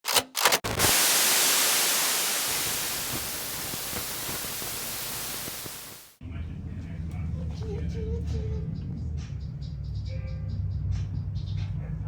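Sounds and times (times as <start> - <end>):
short bursts of noise: 0.6 - 6.2
loud static hiss: 0.7 - 6.2.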